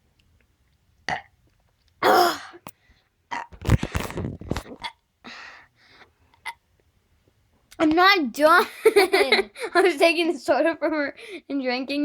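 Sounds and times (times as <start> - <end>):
child burping: 2.0 - 2.6, 3.3 - 3.7, 4.7 - 5.0.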